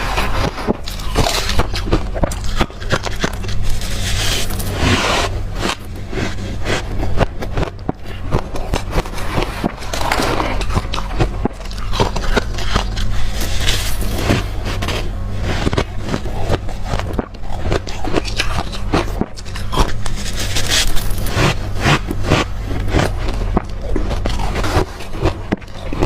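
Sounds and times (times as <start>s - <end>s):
crushed ice being chewed: 0.0s - 26.0s
low steady hum: 0.0s - 26.0s.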